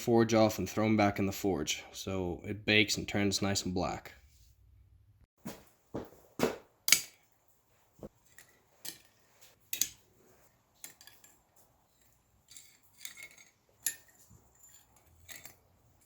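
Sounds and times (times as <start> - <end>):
steel hooks clinking: 12.0 - 16.0.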